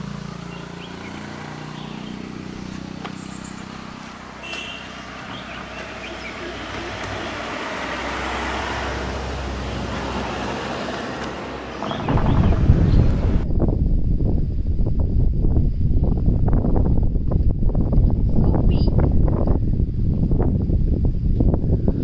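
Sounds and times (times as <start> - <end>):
car engine and tyre noise: 0.0 - 13.5
wind buffeting microphone: 8.9 - 22.0.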